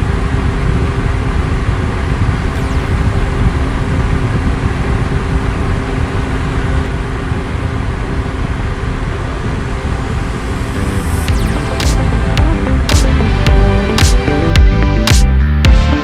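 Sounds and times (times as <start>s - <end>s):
small motor and fan whirring: 0.0s - 11.5s.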